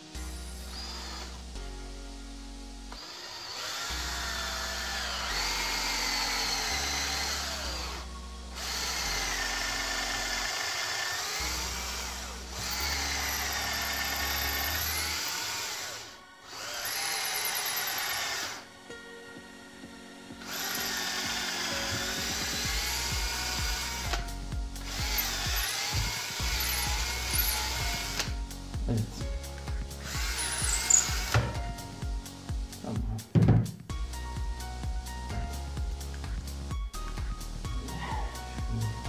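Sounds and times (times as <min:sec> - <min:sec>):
background music with bass: 0:00.0 - 0:03.0, 0:03.8 - 0:10.6, 0:11.2 - 0:16.2, 0:18.6 - 0:39.0
electric drill boring wood: 0:00.6 - 0:01.6, 0:02.9 - 0:18.7, 0:20.4 - 0:28.4, 0:30.0 - 0:31.7.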